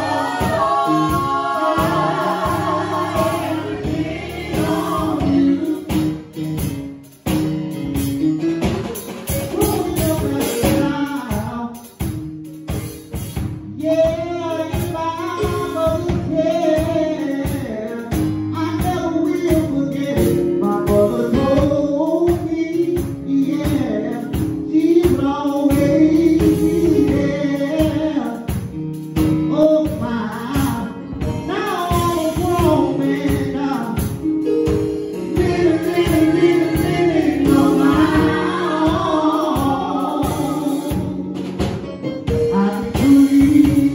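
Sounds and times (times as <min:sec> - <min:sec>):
gospel singing: 0:00.0 - 0:06.8, 0:09.4 - 0:12.1, 0:13.7 - 0:28.8, 0:29.4 - 0:43.9
drums and tambourine beat: 0:00.0 - 0:27.2, 0:27.8 - 0:43.9.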